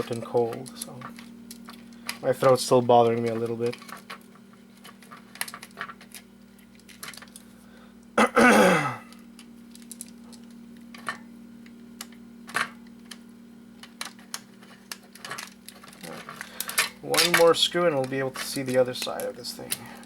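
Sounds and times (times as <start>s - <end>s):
person clearing throat: 8.2s - 9.1s.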